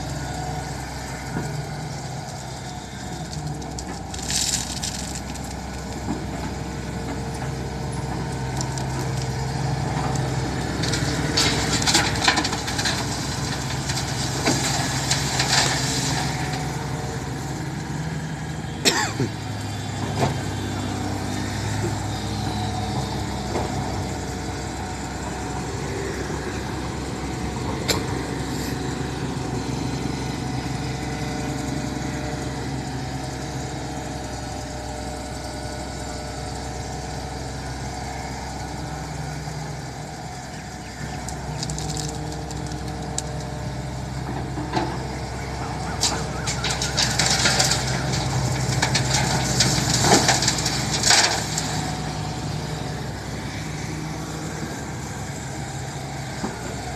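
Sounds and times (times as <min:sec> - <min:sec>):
excavator engine running: 0:00.0 - 0:56.9.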